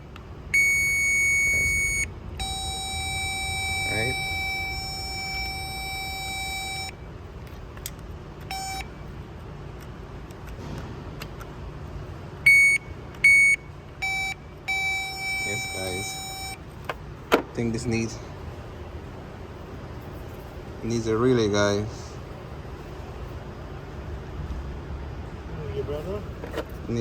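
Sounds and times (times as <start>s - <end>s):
electronic beeper tones: 0.6s - 6.9s, 12.5s - 16.6s.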